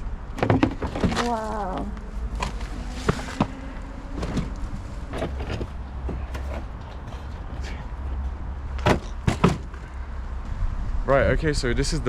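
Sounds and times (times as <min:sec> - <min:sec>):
car bumper knocks and scrapes: 0:04.2 - 0:09.9.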